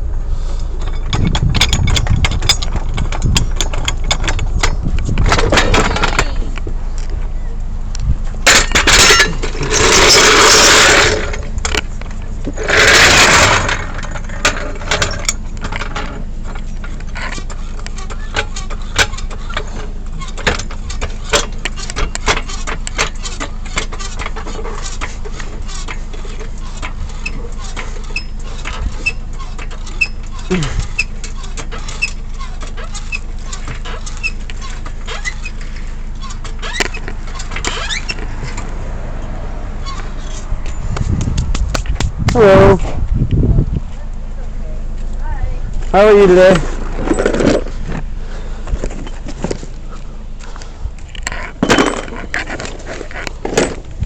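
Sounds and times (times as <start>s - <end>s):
vehicle engine running: 0.0s - 54.0s
clicks and rattles: 0.8s - 7.2s, 7.9s - 38.7s, 48.7s - 54.0s.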